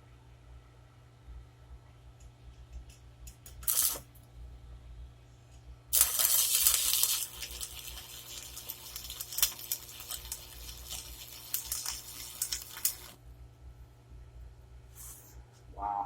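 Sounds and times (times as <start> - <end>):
arc welder crackling: 3.4 - 4.2, 5.9 - 13.2.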